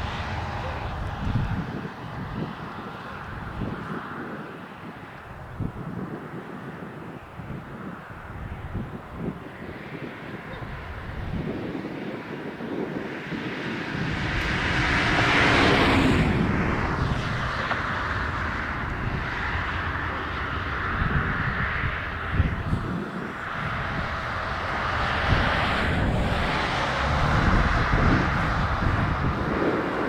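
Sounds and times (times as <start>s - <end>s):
diesel freight train passing: 0.0s - 3.6s, 13.3s - 30.0s.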